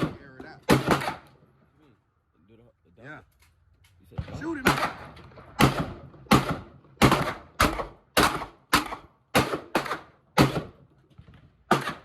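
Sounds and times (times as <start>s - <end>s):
gunshots with echo: 0.0s - 1.3s, 4.2s - 10.8s, 11.6s - 12.0s.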